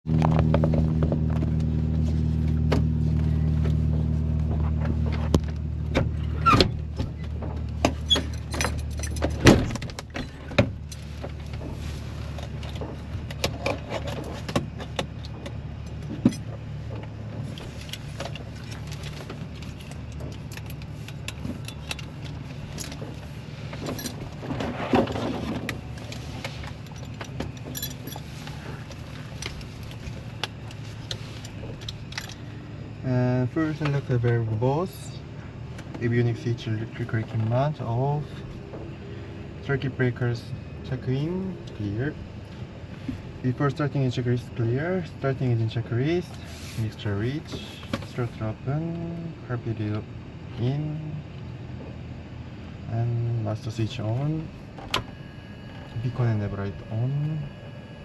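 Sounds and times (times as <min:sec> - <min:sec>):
steady low hum: 0:00.1 - 0:58.0.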